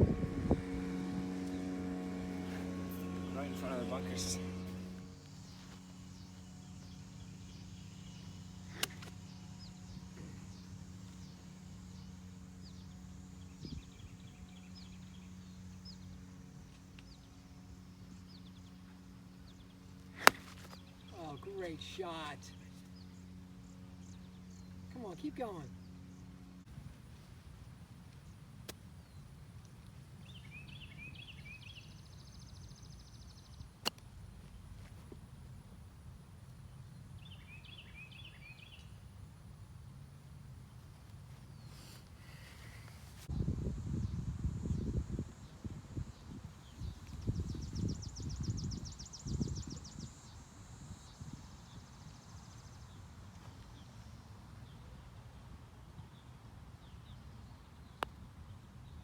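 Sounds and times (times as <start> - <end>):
wind rumble: 0.0 - 3.4, 43.3 - 49.9
birds chirping: 0.0 - 26.3
steady low hum: 0.0 - 54.7
golf club striking ball: 8.7 - 9.2, 20.2 - 20.8.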